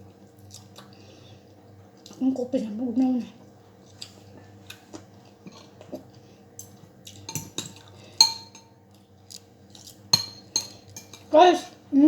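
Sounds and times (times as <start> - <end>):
cutlery clinking against dishes: 7.2 - 8.8, 10.1 - 11.3.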